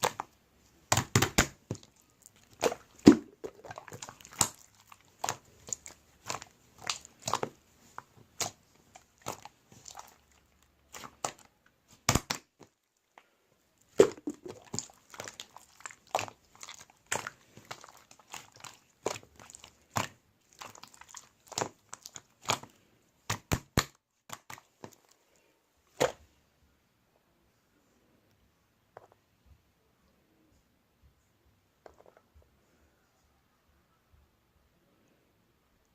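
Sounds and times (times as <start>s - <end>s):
clay slime clicking and popping: 0.0s - 25.1s.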